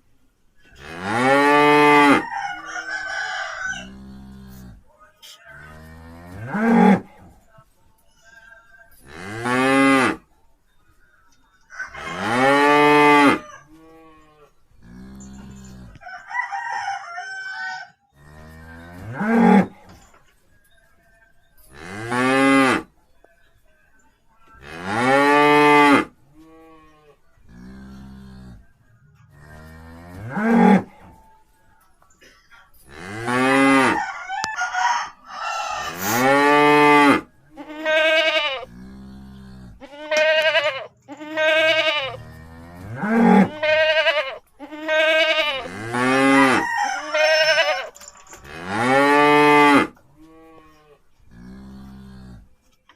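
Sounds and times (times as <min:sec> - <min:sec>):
calf mooing: 0:00.7 - 0:04.8, 0:05.5 - 0:07.1, 0:12.1 - 0:16.0, 0:18.2 - 0:19.8, 0:29.2 - 0:31.2, 0:35.6 - 0:52.5
calf moaning calls: 0:35.6 - 0:48.4.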